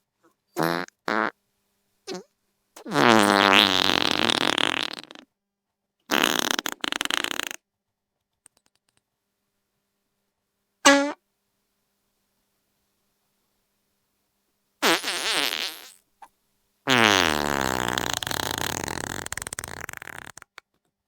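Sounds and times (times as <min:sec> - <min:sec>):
wet farts: 0:00.6 - 0:01.3, 0:02.1 - 0:05.3, 0:06.1 - 0:07.6, 0:14.8 - 0:16.0, 0:16.9 - 0:20.6.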